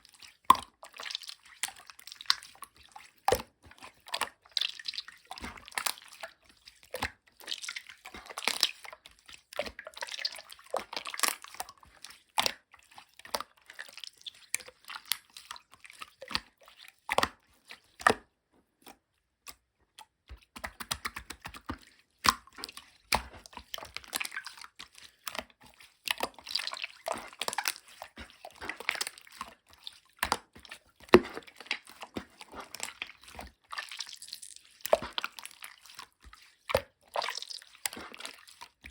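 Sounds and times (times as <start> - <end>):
slime squeezed and stretched: 31.2 - 35.9, 36.7 - 38.6.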